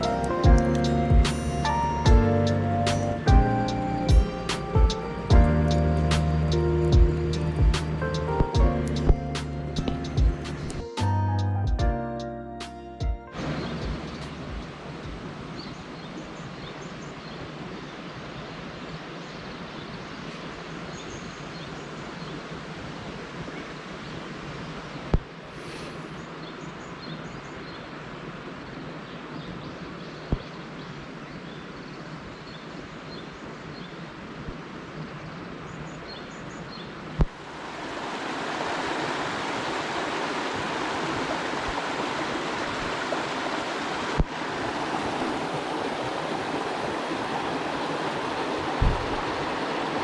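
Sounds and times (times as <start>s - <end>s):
steady rushing noise: 37.2s - 50.0s.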